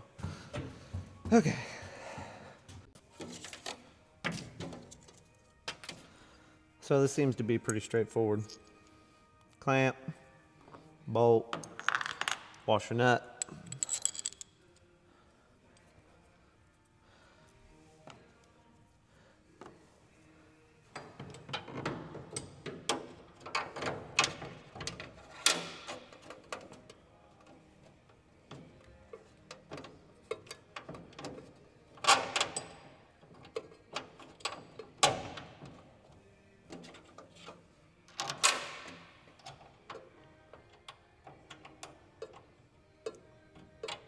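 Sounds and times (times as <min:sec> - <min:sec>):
metal bolts and clamps clicking: 0:13.4 - 0:14.5, 0:21.0 - 0:26.8, 0:29.5 - 0:35.8, 0:36.7 - 0:42.4.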